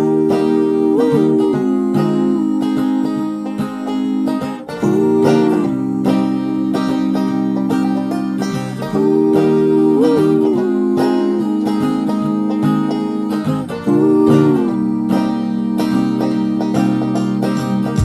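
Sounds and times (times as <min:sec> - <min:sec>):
music with plucked strings: 0:00.0 - 0:18.0.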